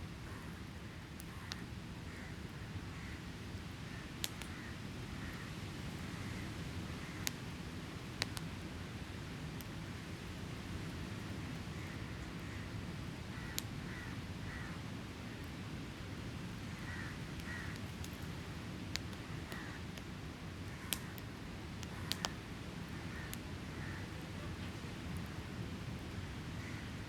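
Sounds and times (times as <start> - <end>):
campfire crackling and popping: 4.2 - 4.7, 6.7 - 14.1, 16.6 - 26.4
crows cawing: 13.3 - 14.8, 16.8 - 17.8, 19.4 - 19.8, 23.0 - 24.1, 26.6 - 26.9.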